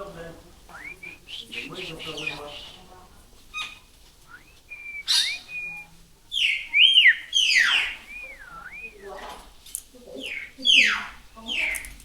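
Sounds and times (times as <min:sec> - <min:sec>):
birds whistling: 0:00.7 - 0:02.8, 0:03.6 - 0:09.4, 0:10.2 - 0:11.7
harsh bird calls: 0:00.8 - 0:02.9, 0:03.6 - 0:09.2, 0:10.2 - 0:11.8.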